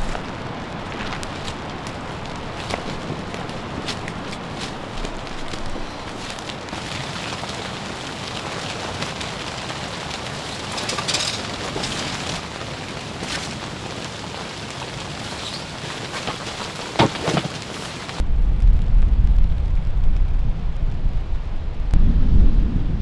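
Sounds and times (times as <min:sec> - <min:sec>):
rain falling: 0:00.0 - 0:18.2.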